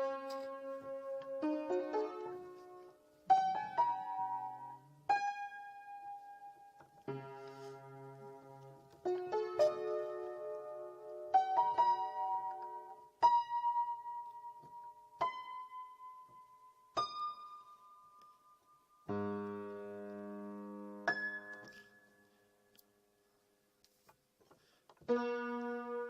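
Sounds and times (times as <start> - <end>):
slow solo piano: 0.0 - 22.5, 25.0 - 26.0.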